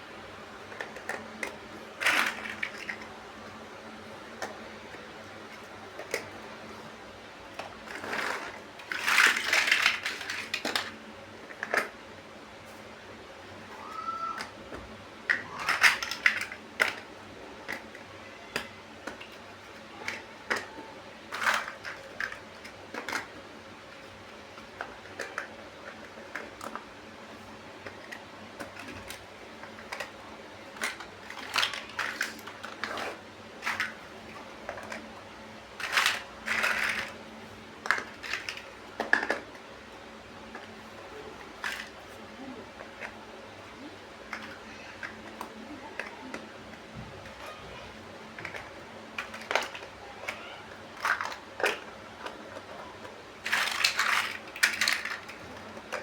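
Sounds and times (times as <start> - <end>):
plastic bricks clicking together: 0.7 - 3.1, 7.6 - 12.0, 15.3 - 17.1, 20.0 - 23.4, 24.6 - 26.9, 27.8 - 35.1, 35.8 - 37.2, 37.8 - 39.6, 44.3 - 46.4, 48.4 - 56.0.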